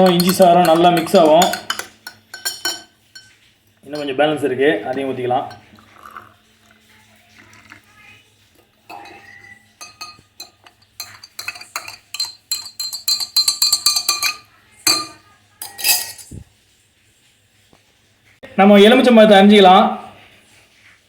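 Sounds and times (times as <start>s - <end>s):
metal spoon clinking against glass: 0.0s - 3.4s, 4.0s - 4.2s, 8.9s - 16.4s.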